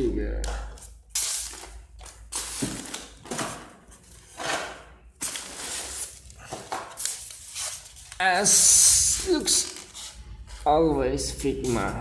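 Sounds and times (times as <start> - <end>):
packaging rustling: 0.8 - 8.7.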